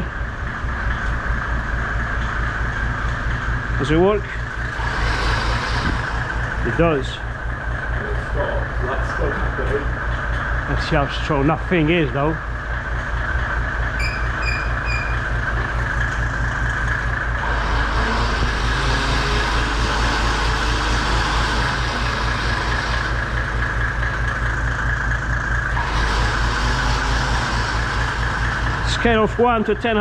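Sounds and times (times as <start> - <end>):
engine idling hum: 0.0 - 30.0
electric winch motor whirring: 2.2 - 8.6, 12.2 - 29.8
short high beeps: 14.0 - 15.2.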